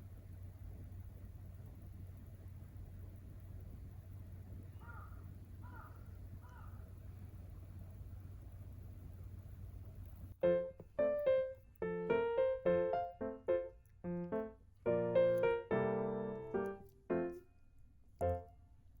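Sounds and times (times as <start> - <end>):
piano melody: 10.4 - 17.4, 18.2 - 18.5.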